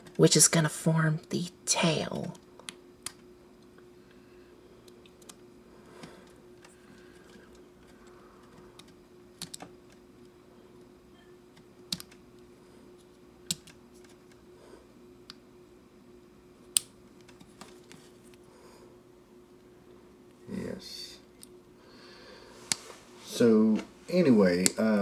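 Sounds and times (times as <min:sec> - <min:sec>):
faint steady hum: 0:00.0 - 0:25.0.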